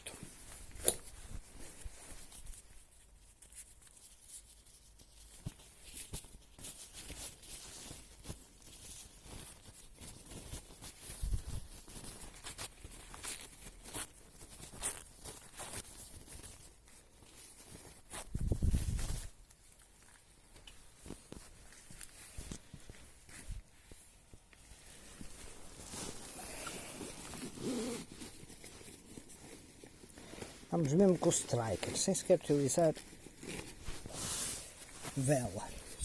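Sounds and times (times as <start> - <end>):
paper tissues rustling and tearing: 0.0 - 36.0.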